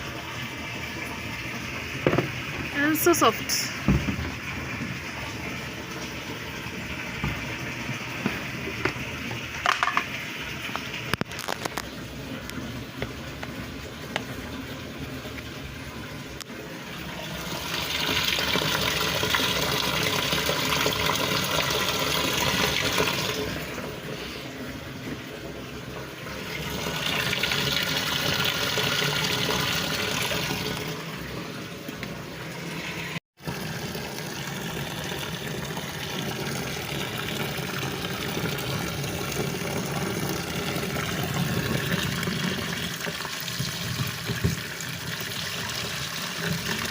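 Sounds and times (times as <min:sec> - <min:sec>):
water running into washing machine: 0:00.0 - 0:46.9.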